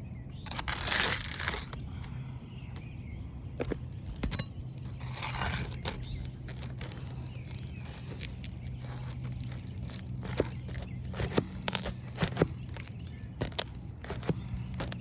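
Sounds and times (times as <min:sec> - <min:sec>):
steady low hum: 0:00.0 - 0:15.0
shingles and nails clinking: 0:00.3 - 0:02.9, 0:03.6 - 0:15.0
scraping rustle: 0:00.4 - 0:02.2, 0:03.6 - 0:15.0.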